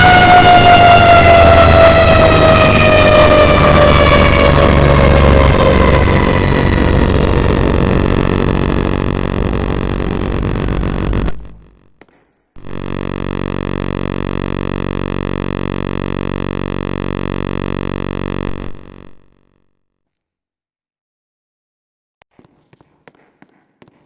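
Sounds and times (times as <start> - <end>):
siren steady buzzing tone: 0.0 - 11.8, 12.6 - 19.4.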